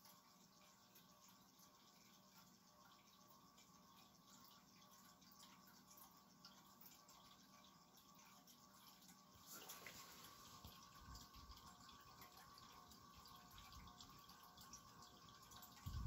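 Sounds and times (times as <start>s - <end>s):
ceiling fan hum: 0.0s - 16.0s.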